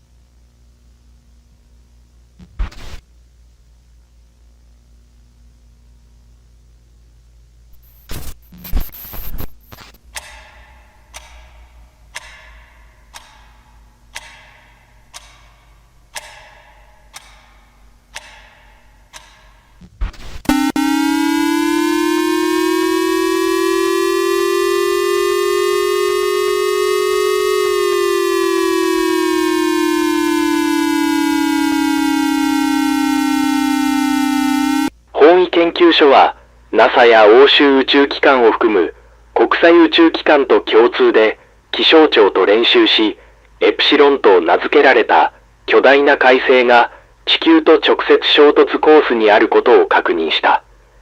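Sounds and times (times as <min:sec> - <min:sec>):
faint low hum: 0:19.7 - 0:51.0
civil defense siren: 0:20.5 - 0:34.9.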